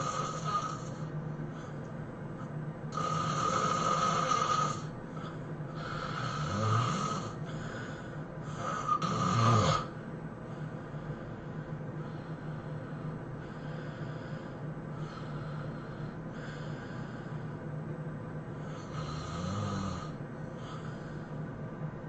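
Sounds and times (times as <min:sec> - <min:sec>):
person snoring heavily: 0:00.0 - 0:01.1, 0:02.9 - 0:10.0, 0:18.6 - 0:21.2.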